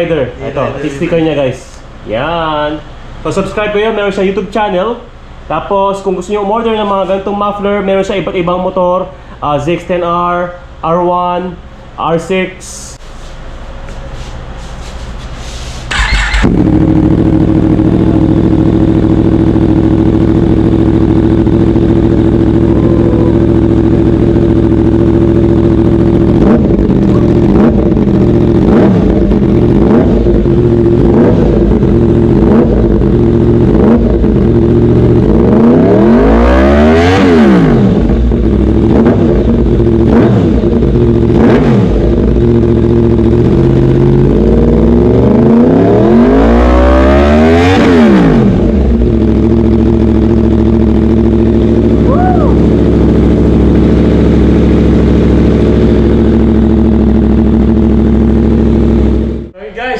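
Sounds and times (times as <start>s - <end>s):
motorcycle engine idling and revving: 13.5s - 59.6s.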